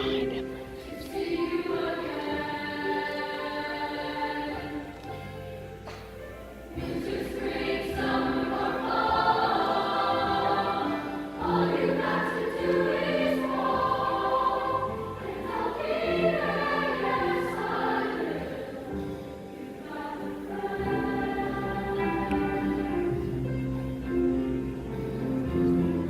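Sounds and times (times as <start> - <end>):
choir singing held notes: 0.0 - 26.0.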